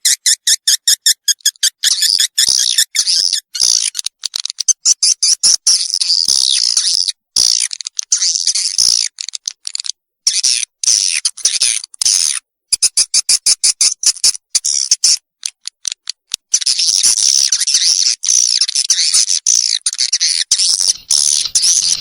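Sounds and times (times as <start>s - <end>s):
birds chirping and twittering: 20.2s - 22.0s.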